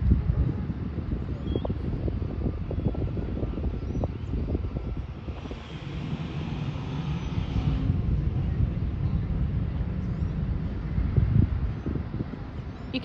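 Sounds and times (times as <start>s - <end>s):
wind buffeting microphone: 0.0s - 13.0s
hiss: 5.3s - 8.0s.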